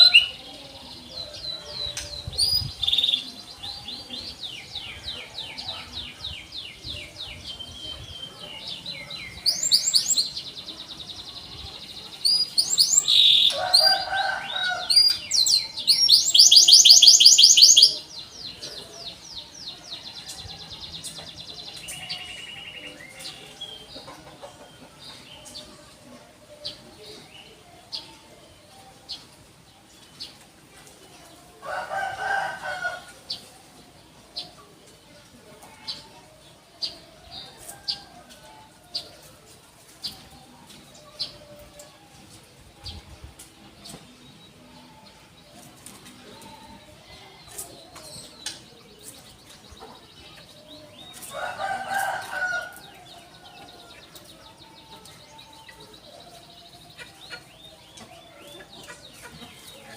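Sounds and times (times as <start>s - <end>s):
canary singing trills: 1.2s - 19.0s.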